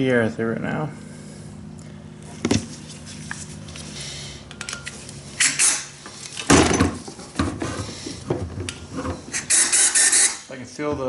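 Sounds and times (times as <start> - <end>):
compressed air blow gun bursts: 9.3 - 10.5.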